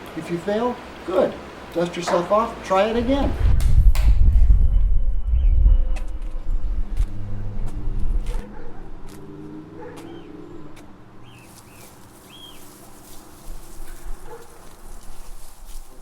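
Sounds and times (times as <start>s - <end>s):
passing vehicle engine rumble: 3.3s - 16.0s.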